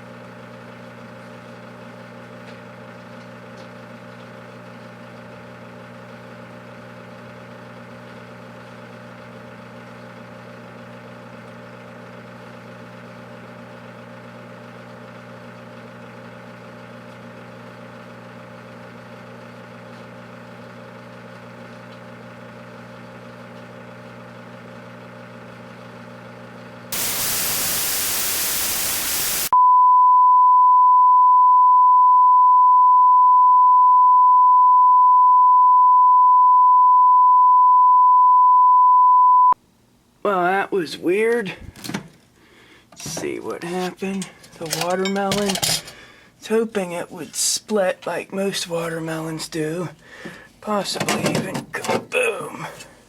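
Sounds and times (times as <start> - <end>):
microwave oven humming: 0.0 - 29.6, 41.3 - 46.8, 48.1 - 53.0
loud static hiss: 27.0 - 29.6
loud steady beep tone: 27.0 - 39.6.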